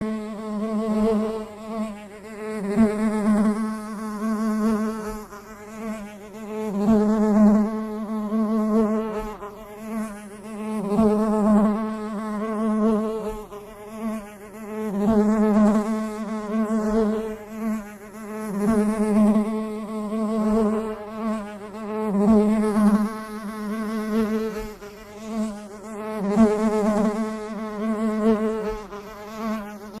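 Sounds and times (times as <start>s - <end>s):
bee buzzing in flight: 0.0s - 30.0s.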